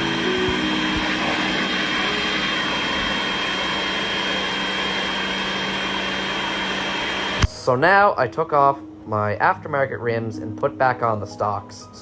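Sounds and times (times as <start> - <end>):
pressure washer motor hum: 0.0 - 7.5.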